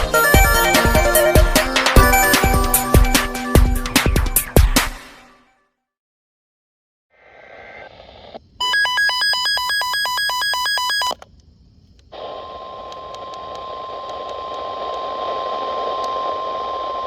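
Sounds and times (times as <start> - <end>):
steady warning alarm tone: 0.0 - 4.5, 8.6 - 11.2
two-tone electronic warble: 0.0 - 4.8.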